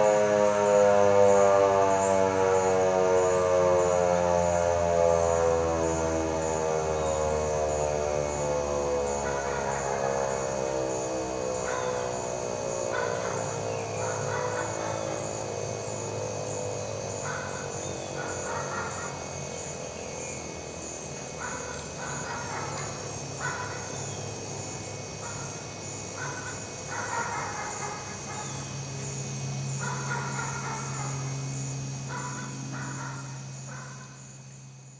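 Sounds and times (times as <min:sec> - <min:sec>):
warning siren winding down: 0:00.0 - 0:24.9
high insect trill: 0:00.0 - 0:34.9
bird calls: 0:11.6 - 0:12.1, 0:26.2 - 0:28.8.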